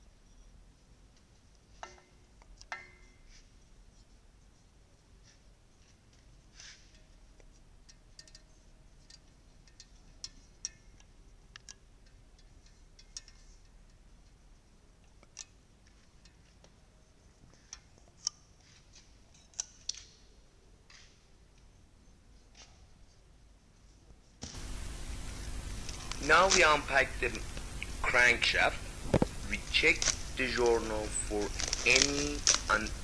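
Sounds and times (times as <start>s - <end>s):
low background hiss: 0.0s - 33.0s
small parts clicking: 6.2s - 16.8s, 17.4s - 20.3s, 25.8s - 33.0s.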